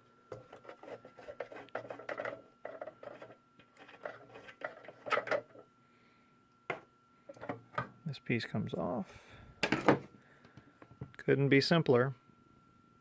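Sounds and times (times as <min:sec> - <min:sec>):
plastic cover clicking and rattling: 0:01.8 - 0:05.6.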